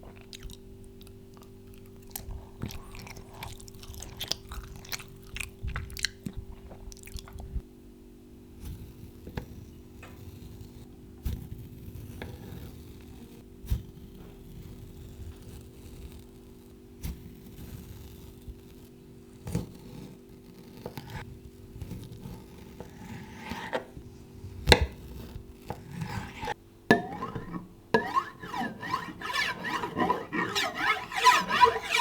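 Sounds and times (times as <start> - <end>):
clicks and squeaky scraping: 26.0 - 32.0.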